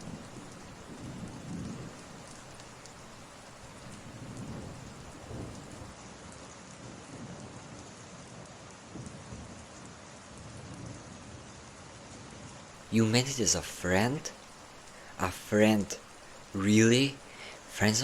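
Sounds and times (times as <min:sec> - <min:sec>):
rain falling: 0:00.0 - 0:05.9, 0:12.8 - 0:18.0
voice: 0:12.9 - 0:14.4, 0:15.2 - 0:16.0, 0:16.6 - 0:18.0.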